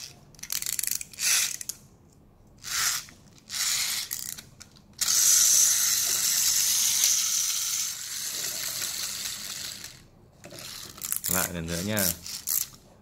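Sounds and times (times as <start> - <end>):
spring motor whirring: 2.6 - 12.8.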